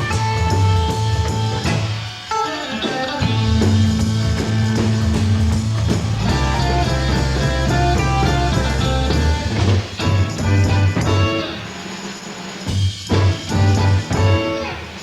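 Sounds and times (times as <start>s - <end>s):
bass guitar: 0.0s - 2.1s, 2.8s - 11.7s, 12.7s - 15.0s
drums: 0.0s - 15.0s
guitar: 0.0s - 15.0s.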